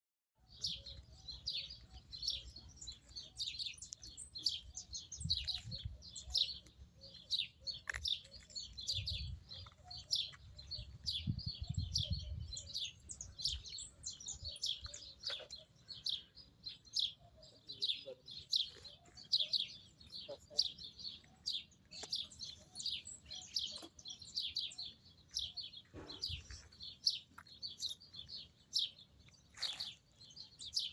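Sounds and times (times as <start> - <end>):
songbirds chirping chorus: 0.4 - 30.9.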